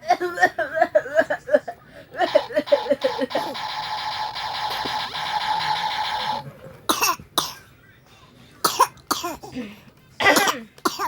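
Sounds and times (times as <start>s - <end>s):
baby coughing: 6.9s - 7.7s, 8.6s - 9.5s, 10.2s - 11.0s.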